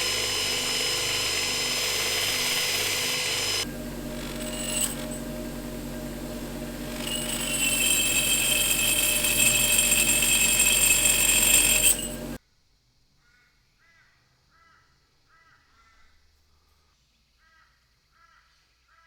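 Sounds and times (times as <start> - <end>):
power tool whining: 0.0 - 12.4.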